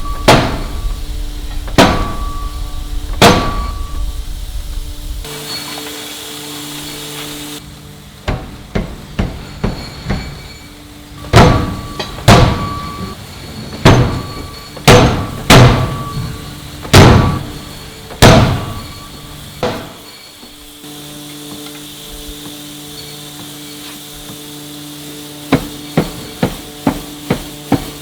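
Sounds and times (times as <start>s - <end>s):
hammer strikes on metal: 0.0s - 1.0s, 1.7s - 2.6s, 3.2s - 3.9s, 8.2s - 10.6s, 11.2s - 13.2s, 13.8s - 20.1s, 25.5s - 28.0s.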